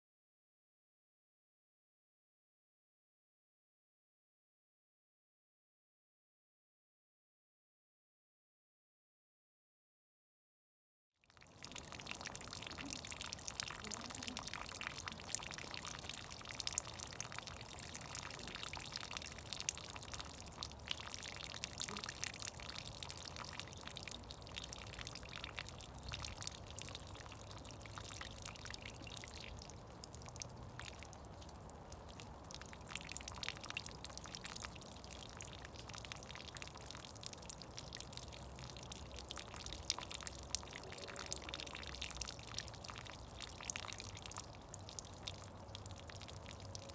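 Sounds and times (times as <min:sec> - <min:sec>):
meltwater dripping and trickling: 0:11.3 - 0:46.9.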